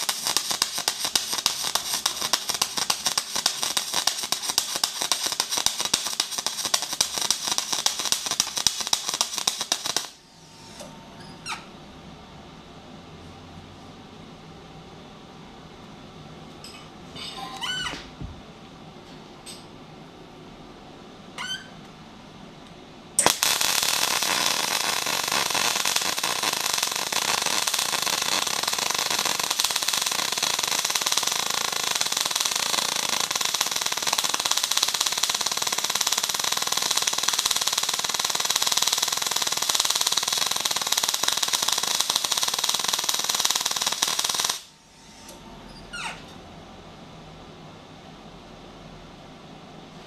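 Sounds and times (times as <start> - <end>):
welder arc crackling: 0.0 - 10.9, 23.2 - 45.4.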